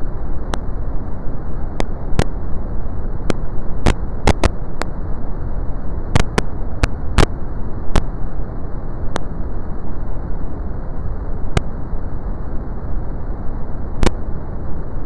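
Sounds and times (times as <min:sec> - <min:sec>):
deep rushing brown noise: 0:00.0 - 0:15.0
sharp clicks: 0:03.9 - 0:04.5, 0:06.2 - 0:06.5.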